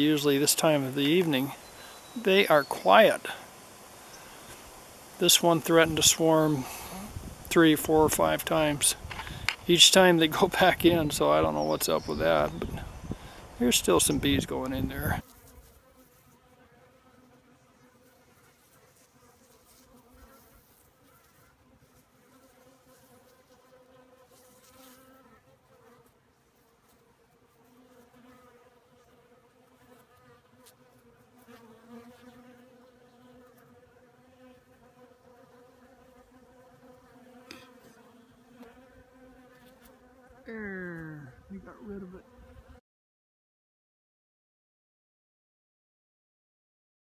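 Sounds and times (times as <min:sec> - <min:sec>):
bees buzzing: 0:00.0 - 0:18.3.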